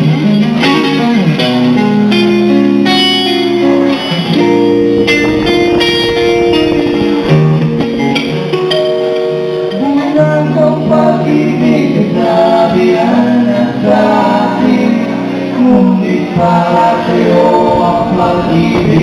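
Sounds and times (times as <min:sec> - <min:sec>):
live band playing: 0:00.0 - 0:19.0
wordless sung notes: 0:00.0 - 0:19.0.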